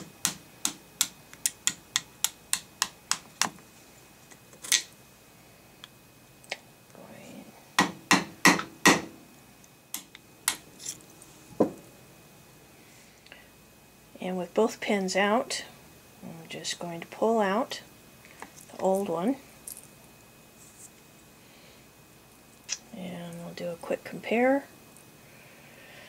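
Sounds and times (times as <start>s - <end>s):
hammer tapping metal punch: 7.8s - 9.1s.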